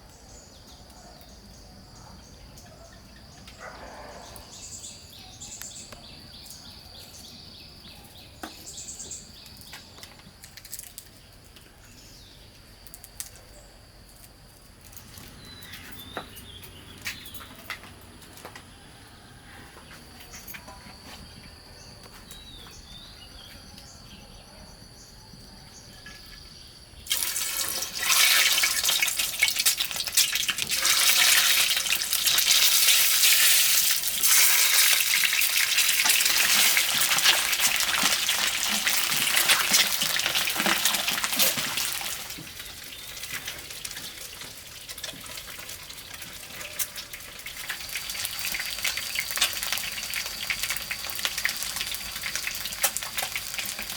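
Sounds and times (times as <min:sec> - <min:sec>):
water running and splashing: 0:27.1 - 0:53.9.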